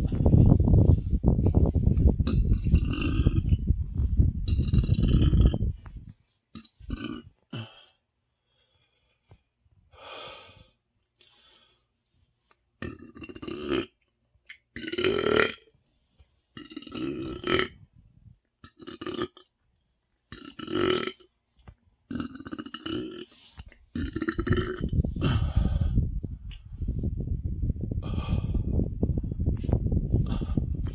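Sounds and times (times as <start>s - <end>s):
person burping deeply: 2.2s - 3.7s, 4.5s - 5.7s, 6.6s - 7.8s, 12.8s - 14.0s, 14.7s - 15.7s, 16.6s - 17.8s, 18.6s - 19.5s, 20.3s - 21.3s, 22.1s - 23.3s, 23.9s - 25.6s.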